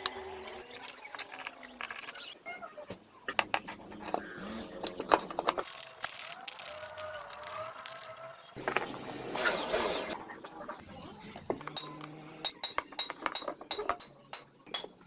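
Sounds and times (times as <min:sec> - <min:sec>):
metal tools clinking: 0:11.4 - 0:15.0.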